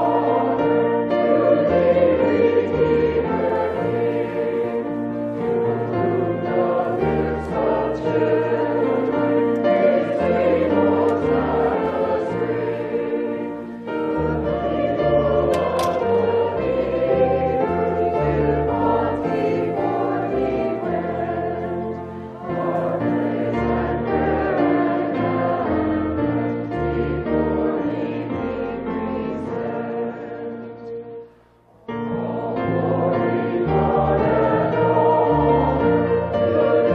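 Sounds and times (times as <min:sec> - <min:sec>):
choir singing a hymn: 0:00.0 - 0:36.9
instrumental accompaniment: 0:00.0 - 0:36.9.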